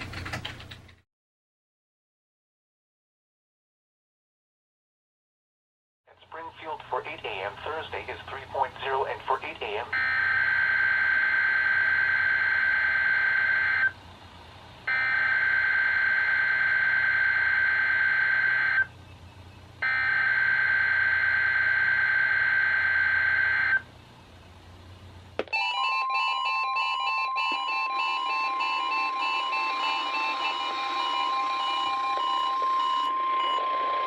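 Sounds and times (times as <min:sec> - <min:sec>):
steady warning alarm tone: 0:09.9 - 0:14.0, 0:14.9 - 0:19.0, 0:19.8 - 0:23.9, 0:25.6 - 0:34.0.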